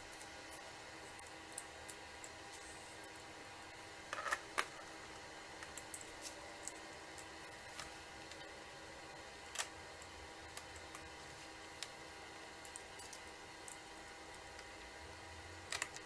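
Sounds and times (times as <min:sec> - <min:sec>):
steady electrical hum: 0:00.0 - 0:16.0
small clicks of laptop parts: 0:09.5 - 0:09.8, 0:15.7 - 0:16.0.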